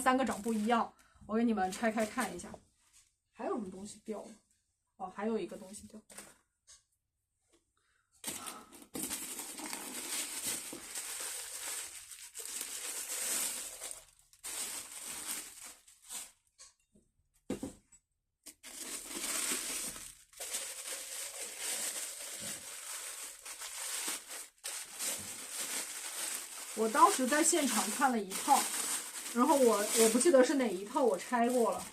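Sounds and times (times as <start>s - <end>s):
wrapping crinkling: 0.0s - 0.8s, 8.2s - 16.6s, 18.5s - 31.9s.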